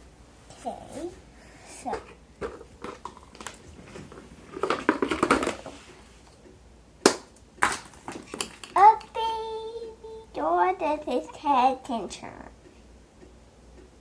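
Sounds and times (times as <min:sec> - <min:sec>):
plastic packaging crinkling: 0:02.4 - 0:06.2, 0:07.6 - 0:08.8.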